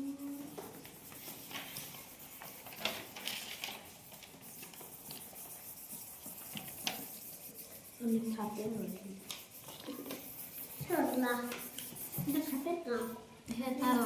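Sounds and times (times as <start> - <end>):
low room noise: 0.0 - 14.0.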